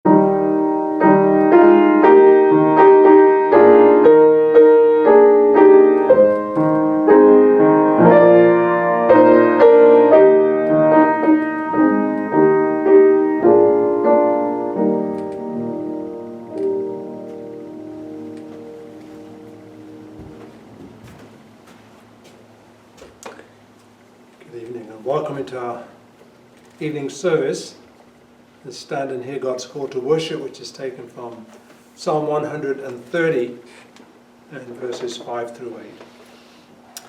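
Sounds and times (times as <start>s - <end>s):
solo piano chords: 0.1s - 21.6s.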